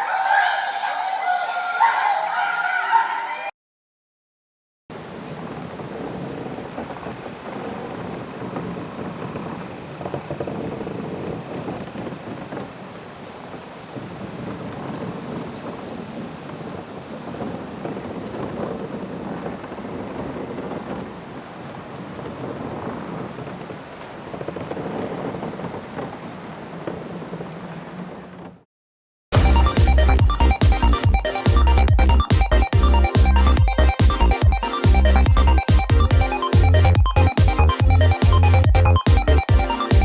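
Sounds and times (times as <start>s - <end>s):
music: 29.4s - 40.0s.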